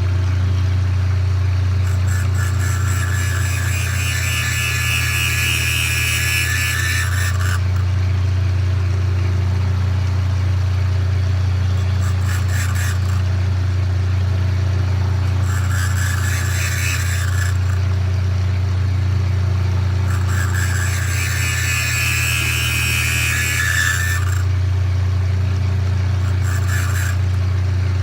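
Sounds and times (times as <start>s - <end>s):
electric motor humming: 1.2s - 28.0s
grinding wheel rasping on metal: 1.8s - 8.0s, 11.6s - 18.3s, 19.3s - 24.8s, 25.5s - 28.0s.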